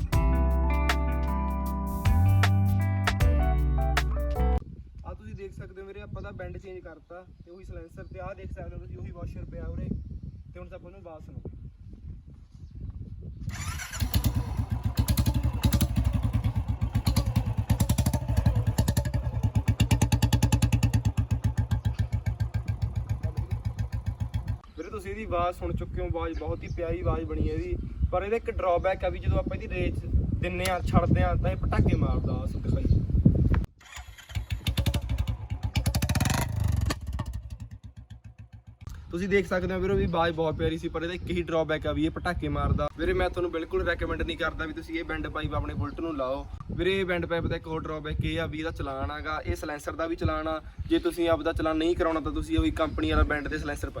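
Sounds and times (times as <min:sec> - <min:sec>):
motorcycle engine idling: 0:13.5 - 0:24.8, 0:34.2 - 0:39.1.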